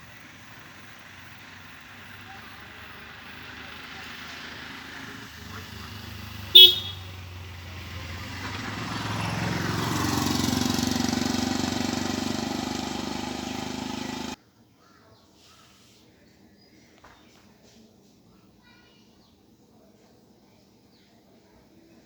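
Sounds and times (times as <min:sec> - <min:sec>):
vehicle engine passing: 0:00.1 - 0:14.4
short high-pitched horn toot: 0:06.6 - 0:07.1.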